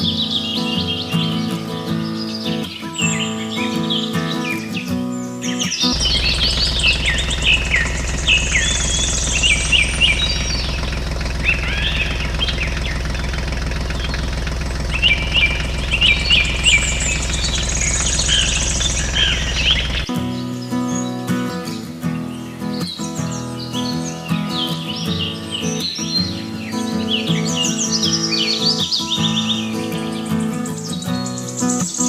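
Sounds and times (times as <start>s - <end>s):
music: 0.0s - 7.0s, 20.1s - 32.0s
birds chirping: 0.0s - 32.0s
small motor buzzing: 5.9s - 20.1s.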